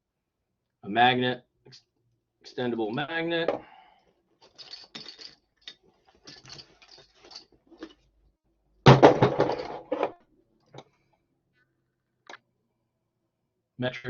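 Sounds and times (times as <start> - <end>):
tools clattering down: 4.4 - 8.0, 8.9 - 10.2
tools clicking and rustling: 4.4 - 8.1.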